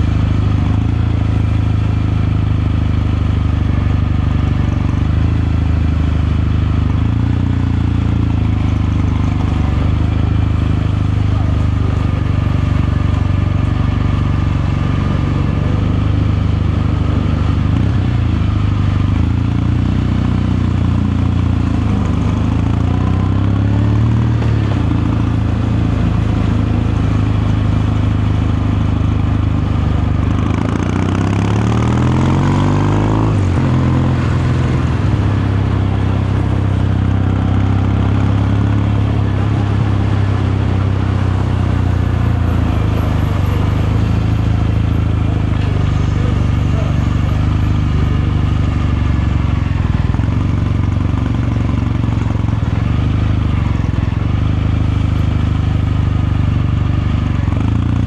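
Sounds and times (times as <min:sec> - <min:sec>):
motorcycle engine and exhaust: 0:00.0 - 0:58.0.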